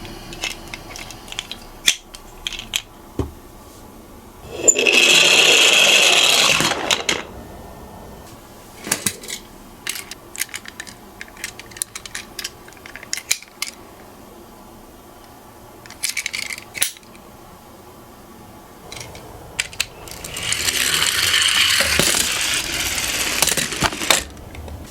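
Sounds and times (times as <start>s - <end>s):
toy cars rattling down a slope: 4.5s - 7.3s, 18.9s - 24.4s
small toys clicking together: 9.8s - 13.8s, 15.8s - 17.2s.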